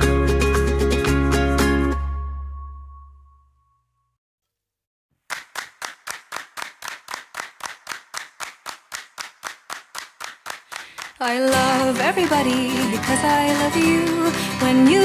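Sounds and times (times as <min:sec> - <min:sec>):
hand claps beating time: 0:05.2 - 0:15.0.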